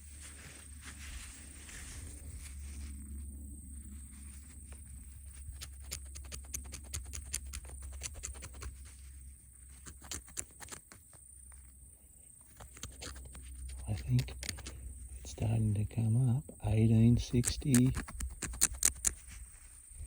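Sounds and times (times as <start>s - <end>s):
steady low hum: 0.0s - 20.0s
coin being scraped by hand: 17.3s - 19.4s.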